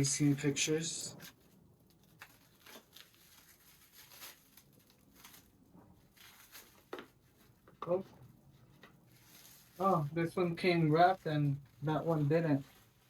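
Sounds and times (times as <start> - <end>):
packaging rustling and clicking: 1.2 - 9.8.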